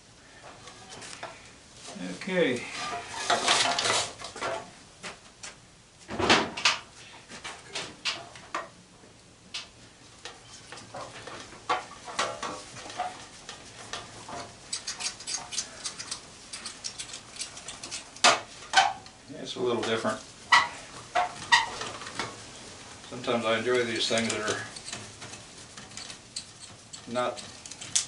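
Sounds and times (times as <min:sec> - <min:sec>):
metal parts and tools clinking: 0:14.3 - 0:18.4, 0:24.0 - 0:28.0.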